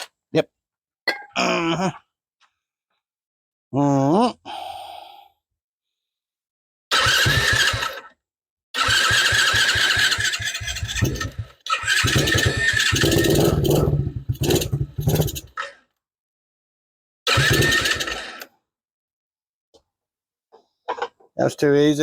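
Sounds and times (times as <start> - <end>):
engine starter cranking: 6.9 - 8.2, 8.8 - 15.6, 17.3 - 18.5.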